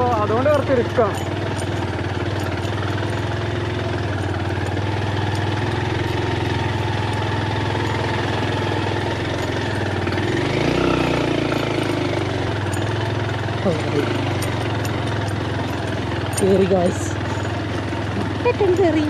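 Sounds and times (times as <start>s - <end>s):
vehicle engine running under load: 0.0s - 19.0s.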